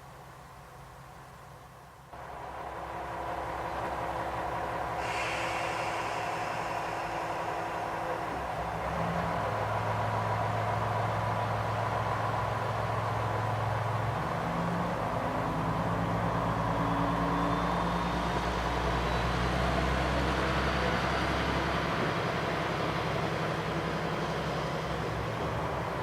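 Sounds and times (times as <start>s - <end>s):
diesel railcar engine hum: 0.0s - 26.0s
deep drone: 2.2s - 12.5s.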